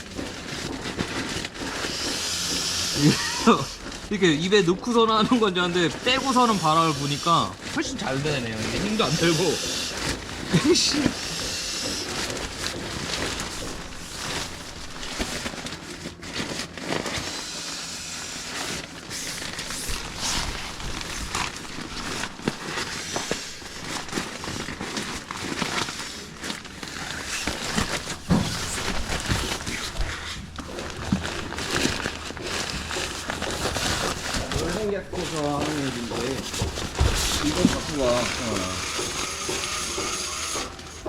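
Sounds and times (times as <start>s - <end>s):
mat fabric rustling: 0.0s - 41.0s
breath puffs into valve: 1.7s - 3.8s, 9.0s - 12.4s.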